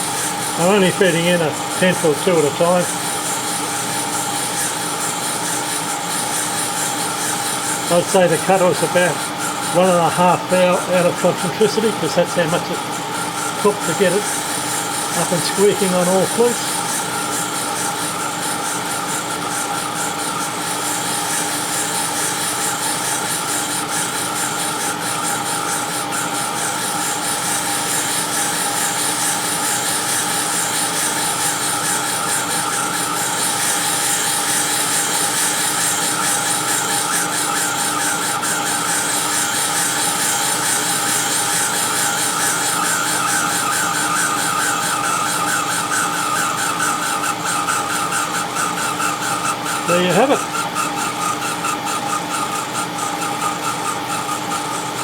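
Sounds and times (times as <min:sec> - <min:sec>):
grinder whine: 0:00.0 - 0:55.0
grinding wheel hiss and squeak: 0:00.0 - 0:55.0.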